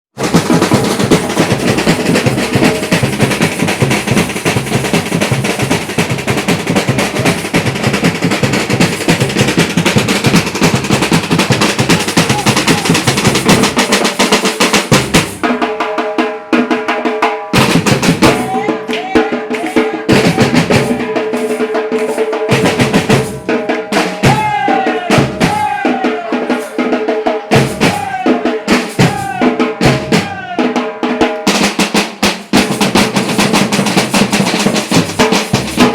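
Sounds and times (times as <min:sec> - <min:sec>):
samba percussion drumming: 0:00.1 - 0:35.9.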